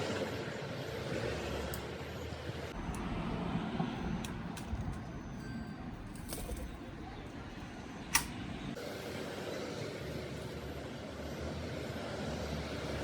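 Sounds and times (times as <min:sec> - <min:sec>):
steady background hum: 0:00.0 - 0:13.0
sharp click: 0:08.1 - 0:08.4.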